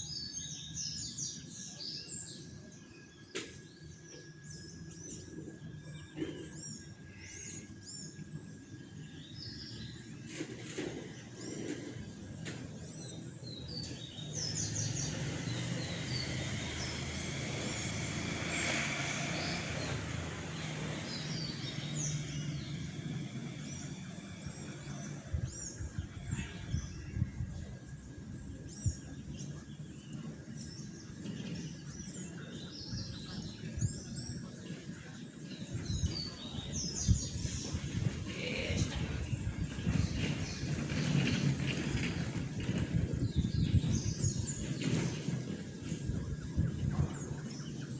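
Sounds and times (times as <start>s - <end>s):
birds chirping: 0.0s - 47.9s.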